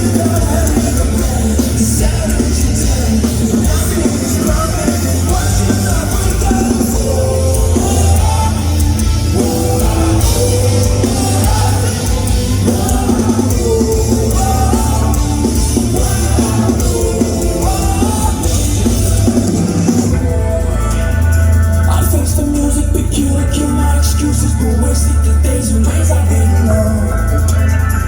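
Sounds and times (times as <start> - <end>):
person singing: 0.0 - 20.4
drums: 0.0 - 28.0
guitars playing: 0.0 - 28.0
heavy bass: 0.0 - 28.0.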